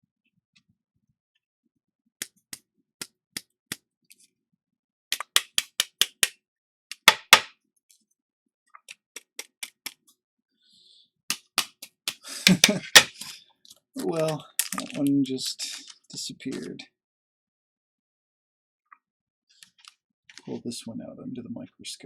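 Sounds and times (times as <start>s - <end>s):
small hard objects clicking: 14.0s - 16.6s.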